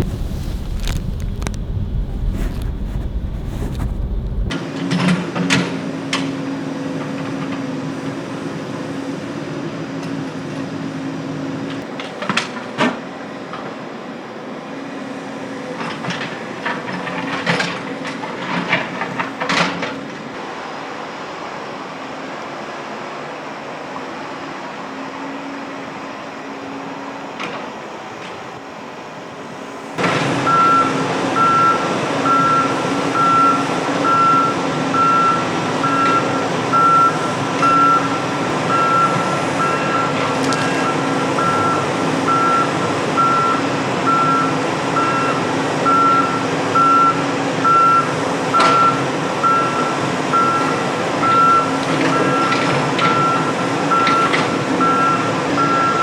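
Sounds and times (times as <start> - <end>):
engine running: 0.0 - 4.5
reversing alarm beeping: 30.5 - 56.0.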